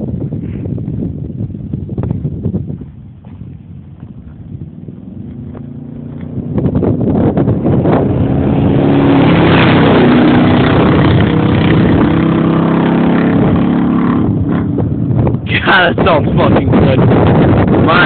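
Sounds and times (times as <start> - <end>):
pickup truck accelerating past: 5.1 - 14.7.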